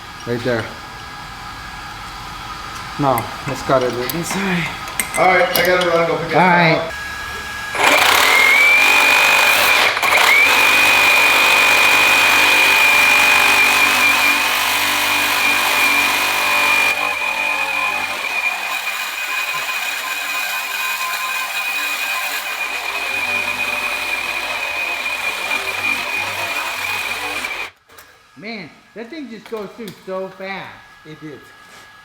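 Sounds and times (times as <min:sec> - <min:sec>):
reciprocating saw cutting steel: 0:06.9 - 0:27.8.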